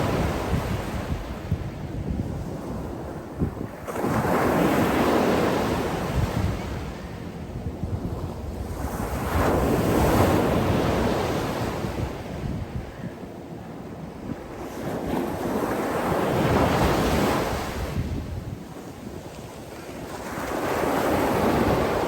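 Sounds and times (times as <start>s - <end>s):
sea waves breaking: 14.5s - 22.0s.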